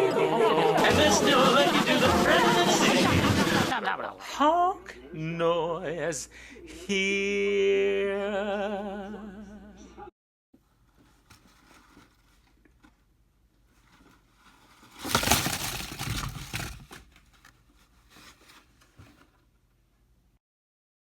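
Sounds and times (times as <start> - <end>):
loud rustling and crinkling: 10.6 - 19.7
faint handling noises: 10.6 - 20.1.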